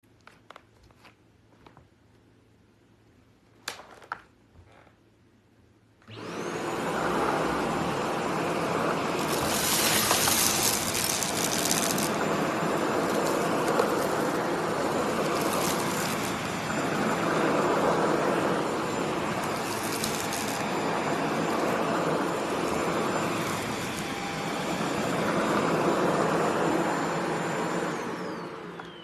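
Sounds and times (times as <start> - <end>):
vacuum cleaner motor whine: 6.0 - 29.0
high rattling hiss: 9.0 - 17.4, 18.5 - 25.2.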